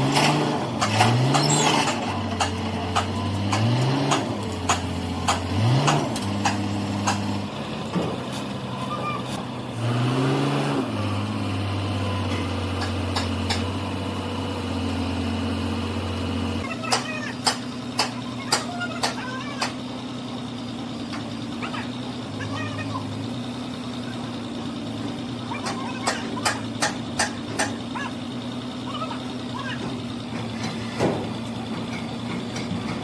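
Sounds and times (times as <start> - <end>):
sharp metallic knocks: 0.2 - 7.3, 12.3 - 13.8, 16.8 - 19.8, 25.6 - 28.0, 29.8 - 33.0.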